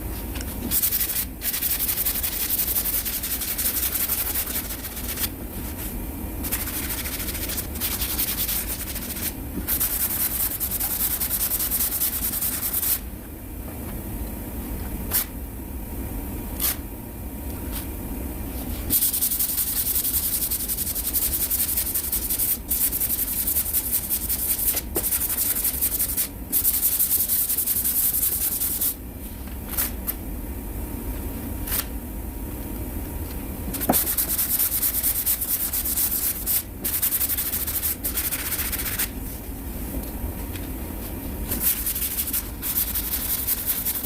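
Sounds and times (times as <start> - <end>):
sandpaper rasping over filler: 0.7 - 5.8, 6.4 - 13.0, 33.9 - 39.1, 41.5 - 44.0.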